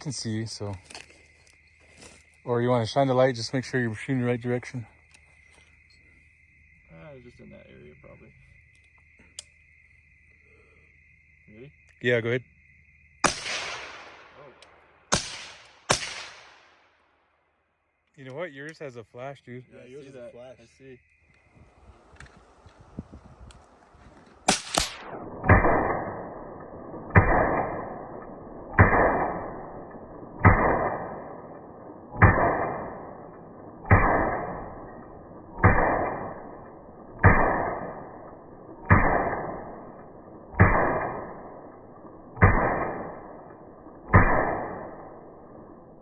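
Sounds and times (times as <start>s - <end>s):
slowed-down rifle shots: 13.2s - 17.0s, 24.5s - 46.0s.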